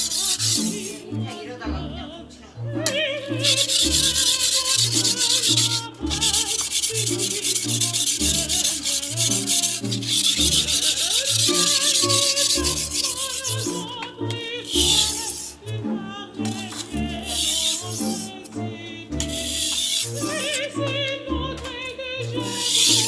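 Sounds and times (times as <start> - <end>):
knife scraping on whetstone: 0.0 - 1.0, 3.4 - 14.0, 14.7 - 15.6, 16.5 - 18.3, 19.2 - 20.6, 22.4 - 23.0.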